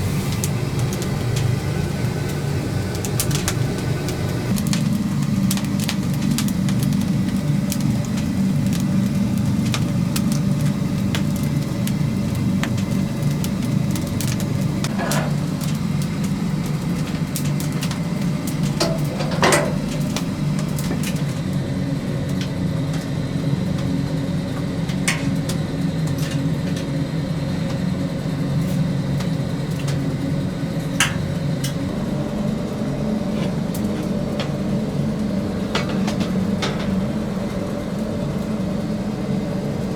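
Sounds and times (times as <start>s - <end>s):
low machine hum: 0.0s - 39.9s.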